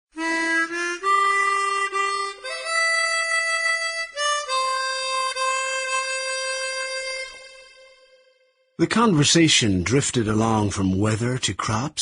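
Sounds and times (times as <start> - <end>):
reedy wind instrument melody: 0.1 - 8.8.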